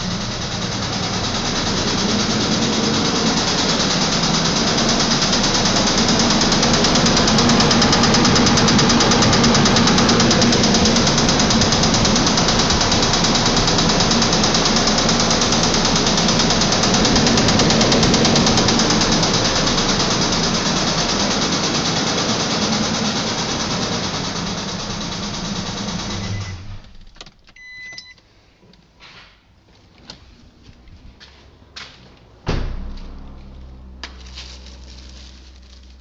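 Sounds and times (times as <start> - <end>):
engine running with rod knock: 0.0 - 27.4, 31.8 - 36.0
short beep: 27.6 - 28.2.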